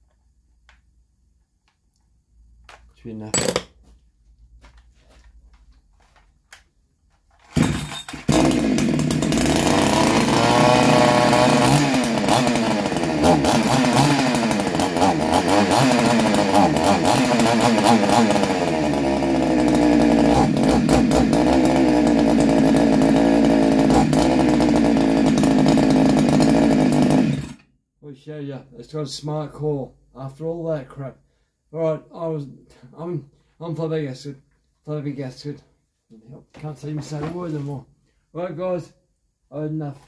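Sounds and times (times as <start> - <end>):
chainsaw engine revving: 7.5 - 27.6.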